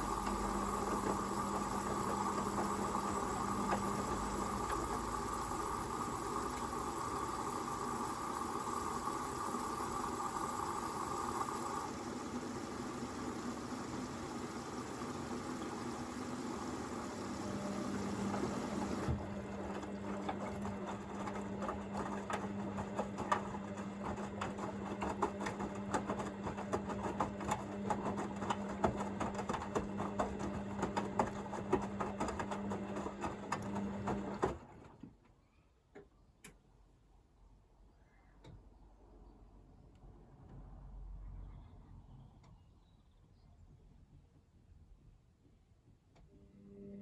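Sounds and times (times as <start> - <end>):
washing machine motor hum: 0.0 - 35.0.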